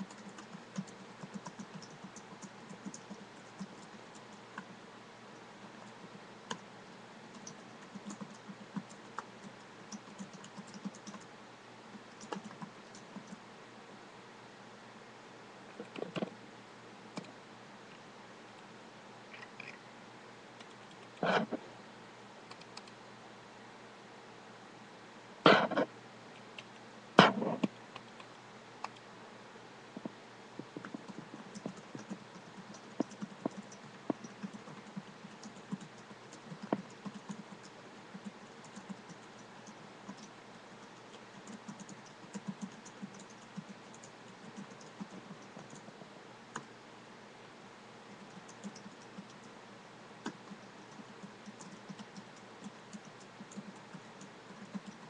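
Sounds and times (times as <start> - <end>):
keyboard typing: 0.0 - 4.8, 7.3 - 11.3, 12.0 - 13.4, 22.5 - 23.0, 30.6 - 46.7, 48.1 - 49.5, 50.2 - 55.0.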